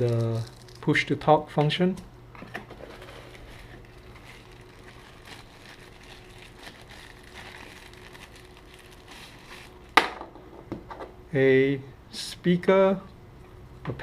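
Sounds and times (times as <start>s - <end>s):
steady low hum: 0.0s - 14.0s
packaging rustling: 2.7s - 10.0s.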